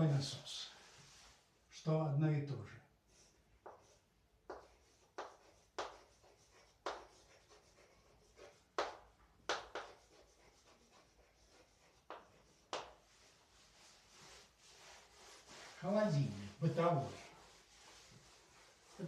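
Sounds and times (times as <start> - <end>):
pen writing strokes: 3.2 - 15.8.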